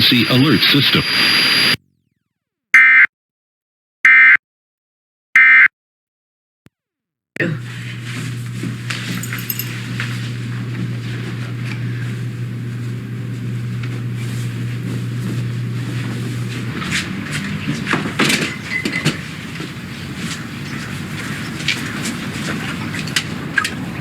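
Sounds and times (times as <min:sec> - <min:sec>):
car engine humming: 0:07.4 - 0:24.0
clunks and knocks: 0:16.8 - 0:20.9.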